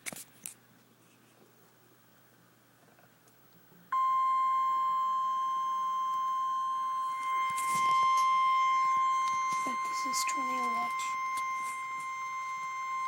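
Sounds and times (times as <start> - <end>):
steady warning alarm tone: 3.9 - 13.0.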